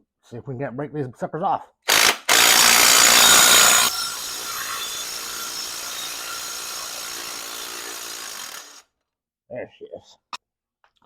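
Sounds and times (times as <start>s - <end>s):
impact wrench hammering: 1.9s - 8.8s
impact wrench spinning whir: 1.9s - 8.9s.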